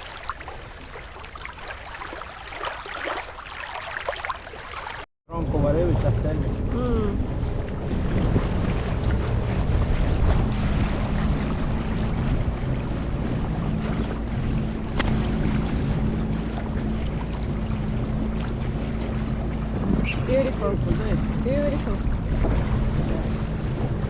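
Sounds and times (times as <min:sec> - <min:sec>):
wind on microphone: 0:05.7 - 0:24.0
outboard motor running: 0:06.0 - 0:24.0.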